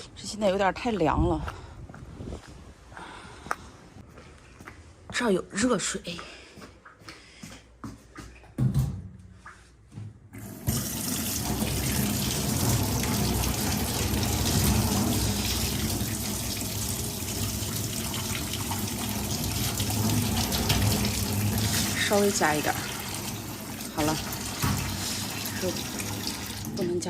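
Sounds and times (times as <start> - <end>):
tap water running: 10.4 - 27.0.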